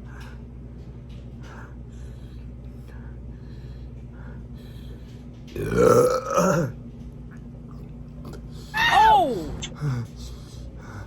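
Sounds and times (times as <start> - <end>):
man burping loudly: 5.6 - 6.8.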